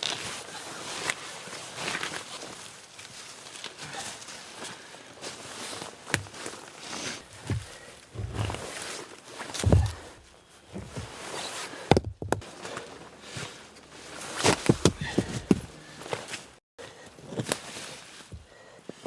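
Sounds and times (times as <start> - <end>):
footsteps: 7.2 - 8.9, 9.5 - 11.2, 11.9 - 16.6
sharp knocks and crunches: 7.2 - 12.8, 14.2 - 16.4.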